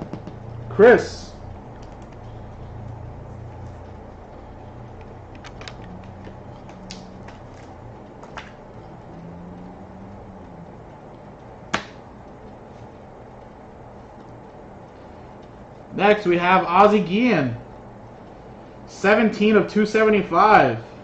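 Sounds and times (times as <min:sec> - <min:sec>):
trading cards clicking and tapping: 0:00.0 - 0:00.6, 0:01.7 - 0:03.0, 0:03.6 - 0:12.9
steady low hum: 0:00.0 - 0:21.0.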